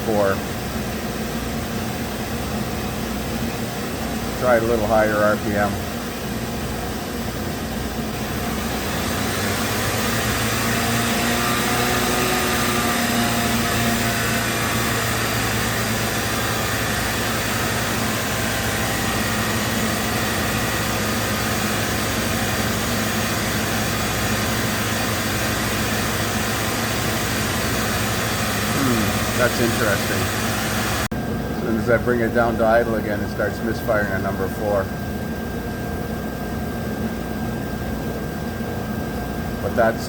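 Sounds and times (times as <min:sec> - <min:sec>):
car engine revving: 0:08.2 - 0:31.1.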